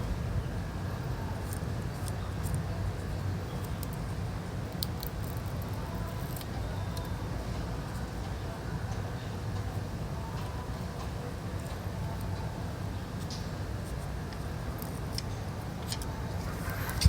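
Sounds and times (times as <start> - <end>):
steady low hum: 13.6 - 17.0.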